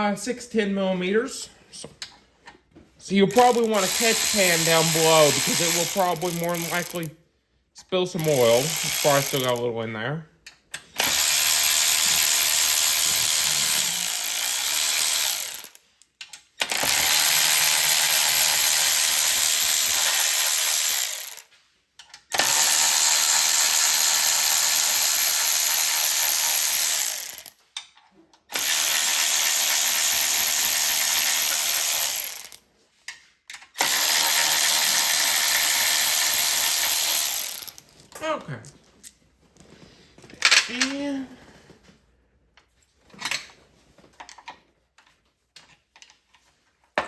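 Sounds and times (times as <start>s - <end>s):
ratchet wrench clicking: 3.3s - 7.1s, 22.3s - 27.5s.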